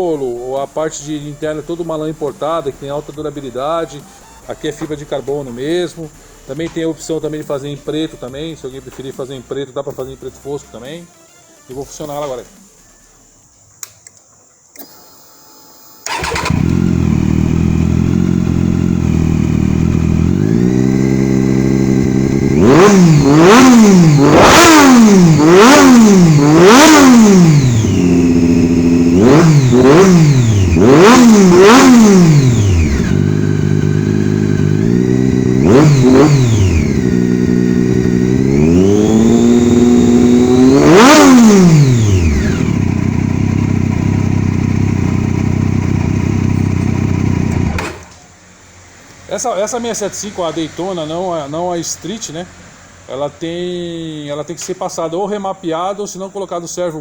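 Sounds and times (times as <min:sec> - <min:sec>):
motorcycle engine idling and revving: 0:16.0 - 0:48.6.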